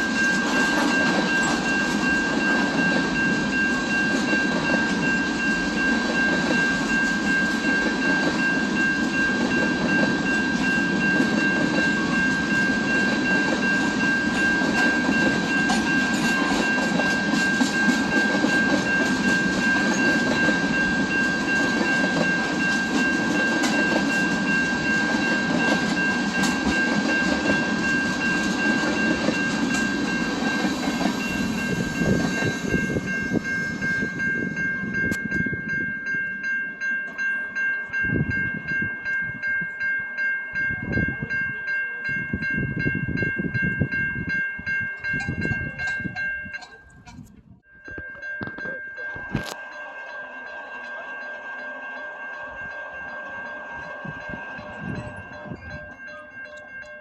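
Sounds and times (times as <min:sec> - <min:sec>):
train wheels rumbling on rail: 0:00.0 - 0:39.6, 0:51.4 - 0:57.0.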